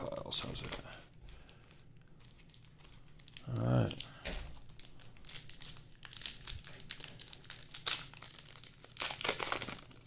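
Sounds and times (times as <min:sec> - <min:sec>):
plastic wrapper crinkling and tearing: 0:00.0 - 0:10.0.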